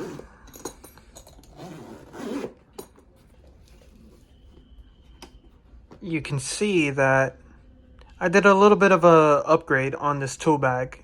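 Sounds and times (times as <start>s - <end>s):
zipper being pulled open: 0.0s - 0.3s, 1.4s - 2.7s
bag handling: 0.0s - 6.1s.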